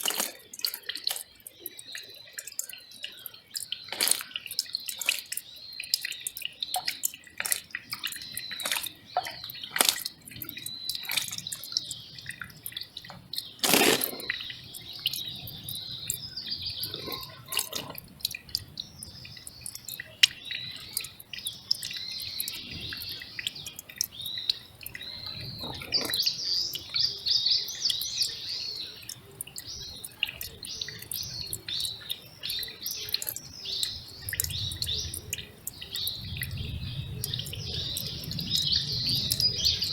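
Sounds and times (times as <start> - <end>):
small birds chirping: 0.0 - 39.9
stream trickling over rocks: 0.0 - 39.9
water splash: 13.6 - 14.4.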